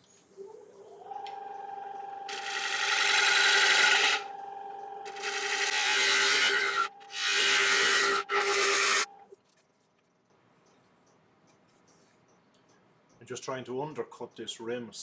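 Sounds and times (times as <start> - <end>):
wood lathe motor whine: 1.0 - 9.2
gouge scraping spinning wood: 2.3 - 4.4, 5.1 - 9.1.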